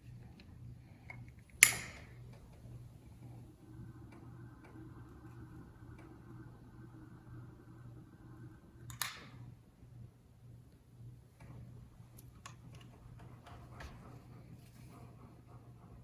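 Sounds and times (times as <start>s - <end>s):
faint steady hum: 0.0s - 16.0s
small clicks: 8.9s - 9.5s.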